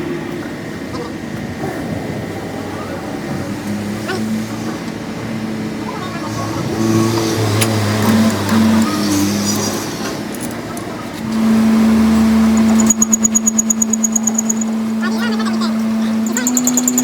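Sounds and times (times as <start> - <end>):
lathe motor hum: 0.0 - 17.0
rapid regular ticking: 10.3 - 17.0.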